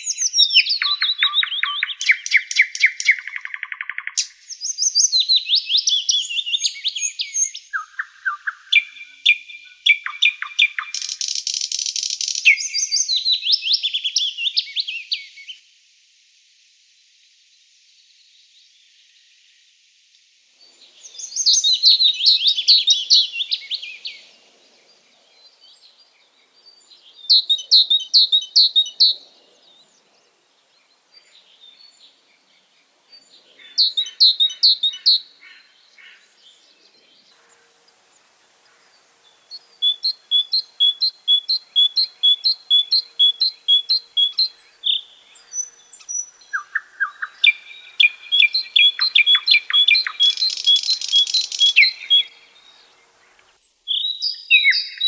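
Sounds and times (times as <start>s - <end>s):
songbirds singing: 0.0s - 15.6s, 20.6s - 55.0s
bird repeating evenly spaced notes: 20.8s - 36.8s, 37.5s - 55.0s.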